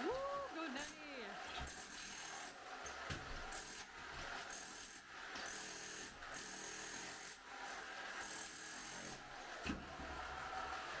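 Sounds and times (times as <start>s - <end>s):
demolition hammer chiselling tiles: 3.1s - 7.4s.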